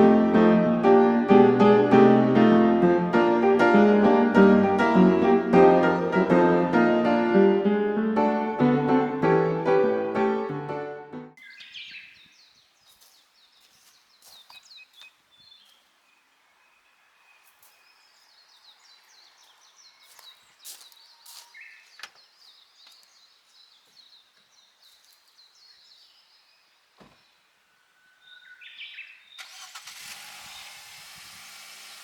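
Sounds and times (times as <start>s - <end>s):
small birds chirping: 11.4s - 29.5s.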